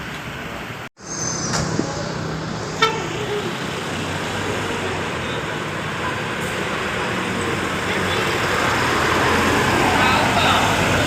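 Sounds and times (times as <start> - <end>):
bus engine running: 0.0 - 11.0
traffic noise: 0.0 - 11.0
short horn toot: 2.8 - 3.5.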